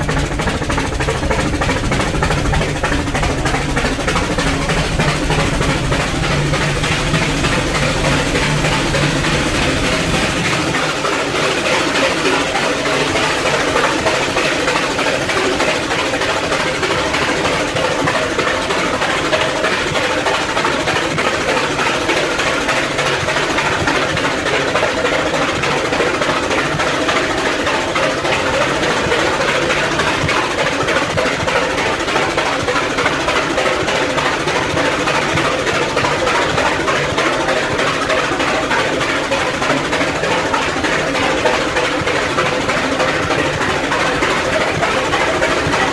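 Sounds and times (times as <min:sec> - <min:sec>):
steam locomotive puffing: 0:00.0 - 0:16.9.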